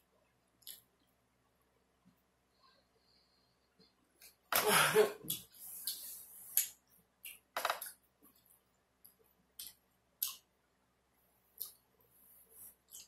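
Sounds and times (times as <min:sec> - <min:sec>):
mouth smacks and clicks: 0:09.0 - 0:10.5, 0:11.6 - 0:11.8.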